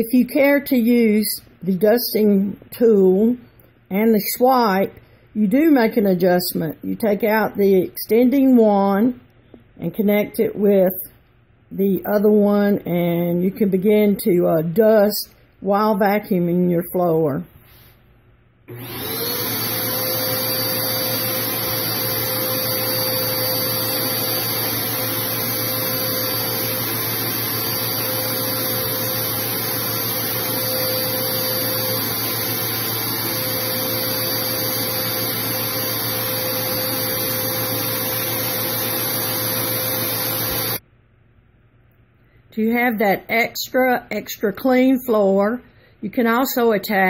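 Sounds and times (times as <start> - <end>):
vacuum cleaner motor whine: 18.7 - 40.8.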